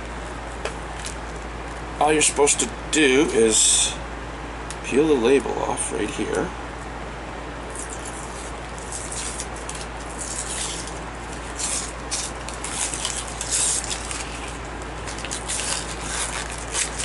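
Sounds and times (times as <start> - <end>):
low steady hum: 0.0 - 17.0
paper and plastic crinkling: 7.7 - 17.0.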